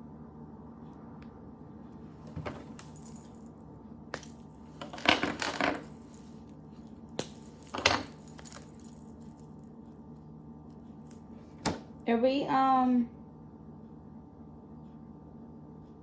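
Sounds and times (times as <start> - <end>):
hard pieces rattling and clicking: 4.2 - 6.3.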